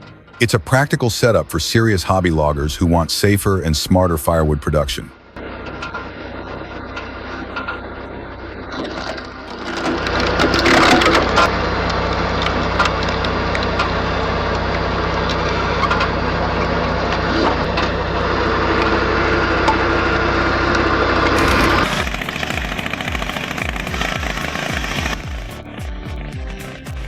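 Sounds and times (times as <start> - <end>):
log splitter motor humming: 5.2 - 27.0
wood cracking and splintering: 8.8 - 11.5, 21.2 - 25.3.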